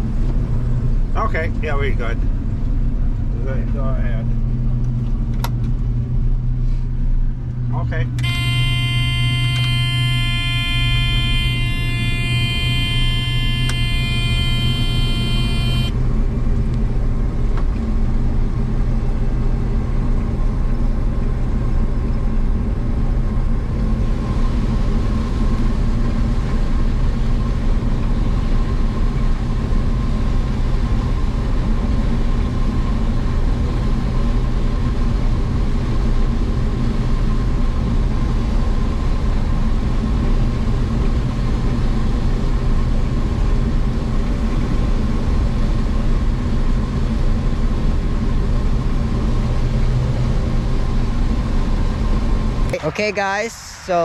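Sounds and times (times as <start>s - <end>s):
machinery engine droning: 5.9s - 22.4s
high buzzing tone: 8.2s - 16.0s.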